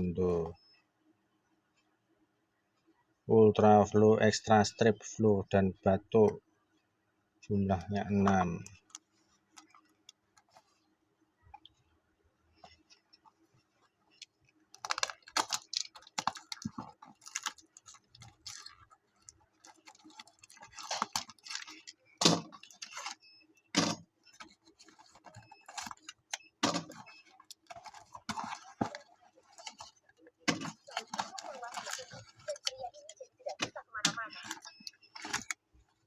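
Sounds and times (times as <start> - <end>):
packaging crinkling and rustling: 12.6 - 36.0.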